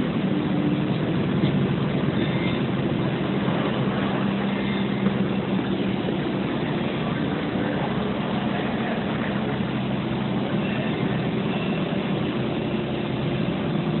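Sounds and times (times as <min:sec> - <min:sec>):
machine engine humming: 0:00.0 - 0:14.0.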